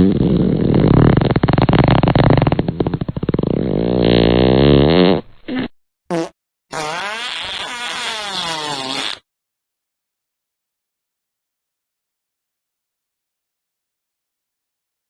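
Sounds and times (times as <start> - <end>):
fart sounds: 0.0 - 9.3.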